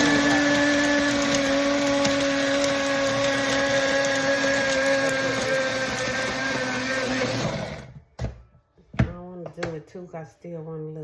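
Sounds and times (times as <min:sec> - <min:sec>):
blender motor running: 0:00.0 - 0:08.0.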